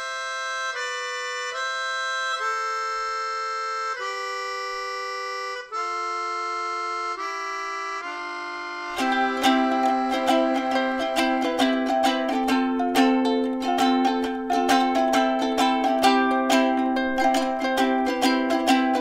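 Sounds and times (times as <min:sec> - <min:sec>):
accordion playing held chords: 0:00.0 - 0:19.0
strummed strings: 0:07.2 - 0:19.0.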